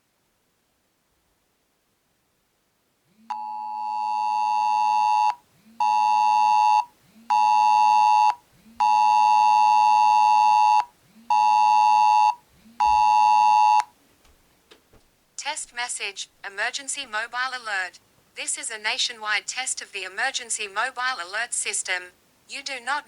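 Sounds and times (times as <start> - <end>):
phone vibration buzzing: 3.3 - 13.9.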